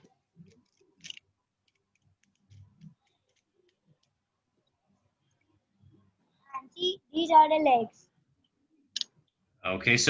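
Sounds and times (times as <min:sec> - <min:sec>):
plastic toy parts clicking: 0:00.5 - 0:04.1.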